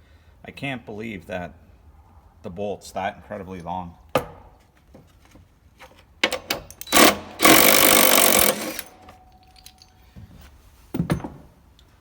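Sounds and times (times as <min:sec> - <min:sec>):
impact driver hammering: 0:06.2 - 0:09.2
sharp clicks and knocks: 0:06.2 - 0:09.8.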